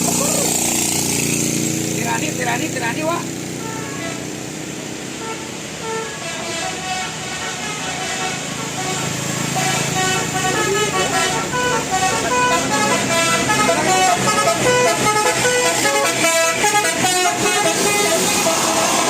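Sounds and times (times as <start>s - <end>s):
bus engine rumble: 0.0s - 2.4s, 3.4s - 19.0s
bus horn playing melody: 3.6s - 4.5s, 5.1s - 19.0s.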